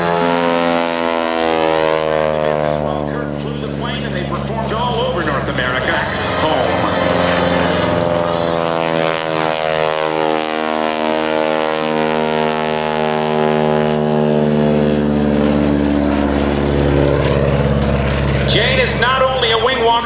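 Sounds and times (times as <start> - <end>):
biplane engine flying past: 0.0 - 20.0.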